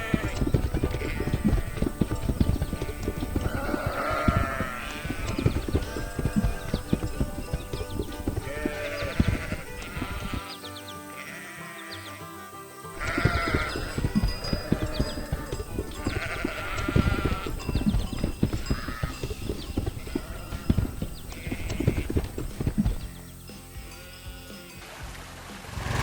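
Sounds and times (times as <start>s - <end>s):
dense clatter of knocks: 0.0s - 10.4s, 13.0s - 23.1s
background music: 0.0s - 26.0s
cartoon bleating animal calls: 8.5s - 10.5s, 11.1s - 12.0s, 13.0s - 13.7s, 16.1s - 17.5s.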